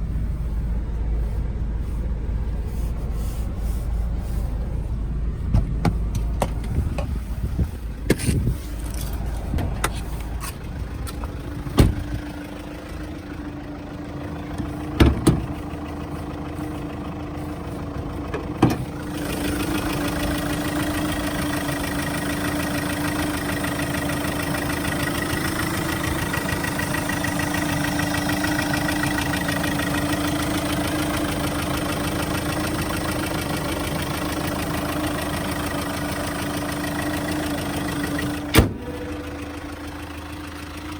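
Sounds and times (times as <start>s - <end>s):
vehicle engine starting and idling: 0.0s - 40.9s
knocks and clunks: 8.0s - 12.2s, 14.5s - 15.6s, 18.2s - 19.0s.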